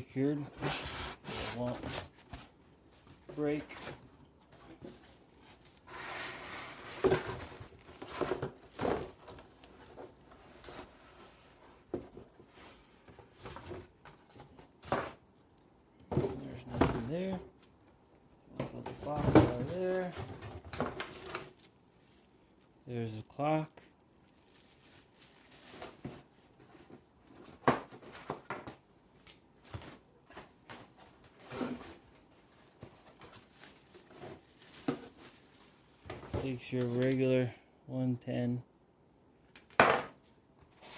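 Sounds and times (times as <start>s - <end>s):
packaging rustling: 0.8s - 10.9s, 19.0s - 22.7s, 24.2s - 28.4s, 29.6s - 37.2s.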